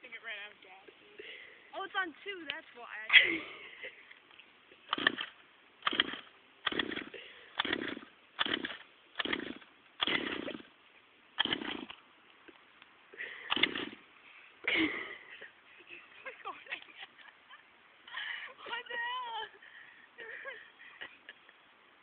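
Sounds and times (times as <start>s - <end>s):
engine recoil starter pulled: 4.9s - 10.7s, 11.4s - 12.0s, 13.5s - 14.0s.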